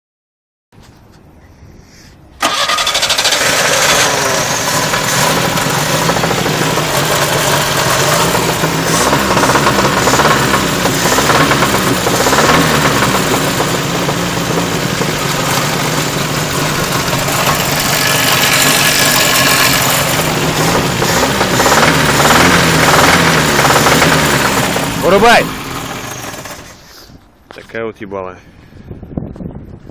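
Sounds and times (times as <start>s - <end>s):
engine running with a knock: 4.9s - 26.6s
person talking: 25.0s - 25.5s.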